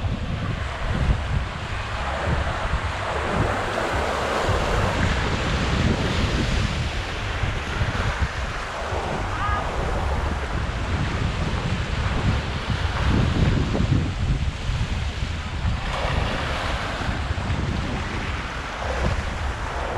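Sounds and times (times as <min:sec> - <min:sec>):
wind buffeting microphone: 0:00.0 - 0:19.9
small waves washing onto beach: 0:01.4 - 0:13.1.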